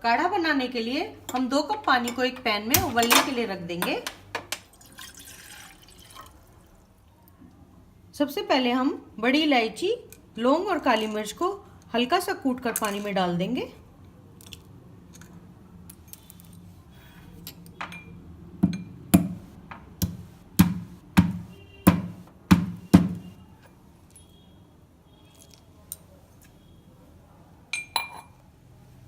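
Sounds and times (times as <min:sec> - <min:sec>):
pestle pounding spices in mortar: 0:20.0 - 0:23.2.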